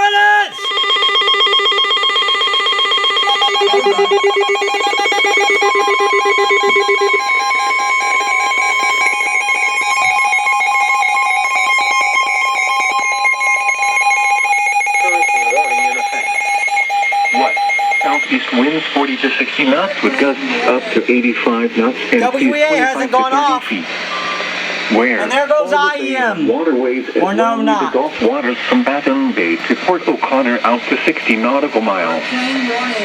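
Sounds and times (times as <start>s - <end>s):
overlapping electronic alarm tones: 0.0s - 26.0s
steady alert tone: 0.5s - 25.6s.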